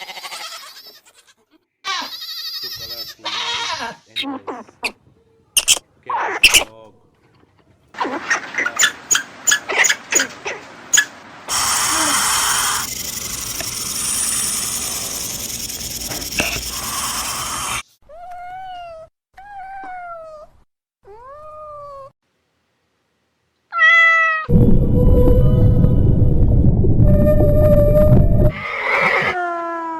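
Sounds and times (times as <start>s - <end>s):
rough hiss-like noise: 11.5s - 17.8s
cat meowing: 23.7s - 24.5s.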